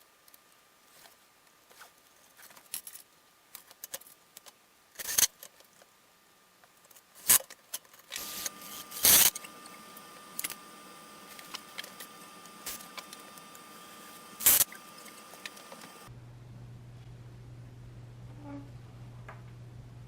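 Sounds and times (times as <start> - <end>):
faint high hum: 8.1 - 20.0.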